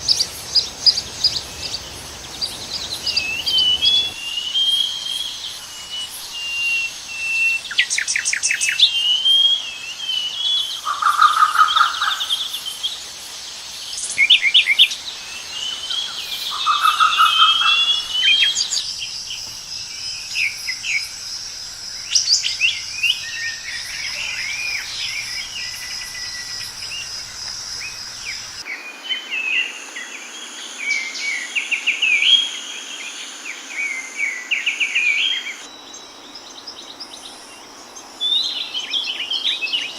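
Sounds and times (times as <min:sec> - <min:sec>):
birds singing and calling: 0:00.0 - 0:39.9
low rapidly pulsed bird call: 0:14.0 - 0:28.6.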